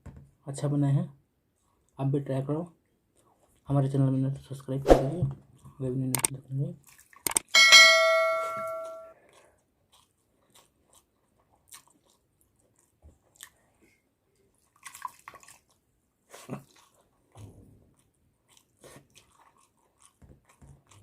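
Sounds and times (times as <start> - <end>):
chewing crunchy food: 2.9 - 3.8, 6.8 - 7.5, 9.1 - 21.0
metal dish clinking: 7.6 - 9.1.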